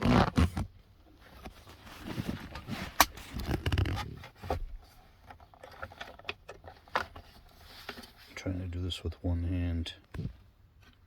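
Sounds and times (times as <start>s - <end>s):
plastic rustling and scraping: 0.0s - 8.4s.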